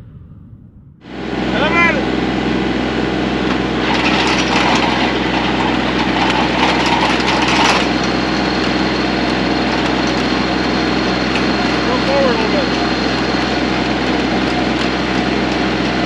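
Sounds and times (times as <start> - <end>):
tractor engine running: 1.0 - 16.0
auger scraping into soil: 3.8 - 8.8.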